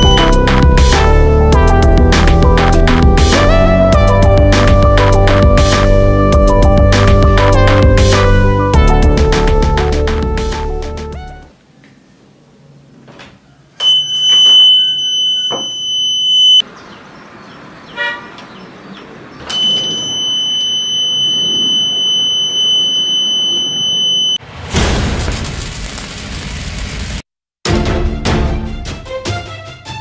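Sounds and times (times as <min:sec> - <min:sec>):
shrill alarm buzzer: 0:00.0 - 0:00.5, 0:13.8 - 0:16.6, 0:19.5 - 0:24.4.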